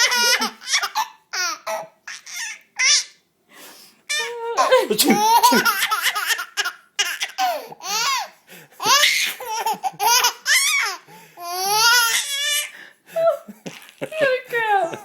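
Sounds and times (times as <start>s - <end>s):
baby laughing: 0.0s - 3.1s, 4.1s - 12.7s.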